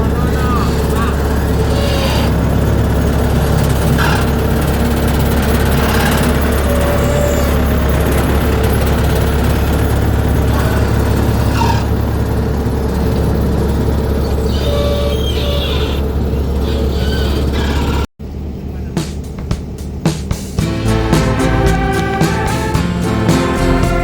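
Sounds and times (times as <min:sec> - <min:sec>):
short squeaks: 0:14.2 - 0:18.0.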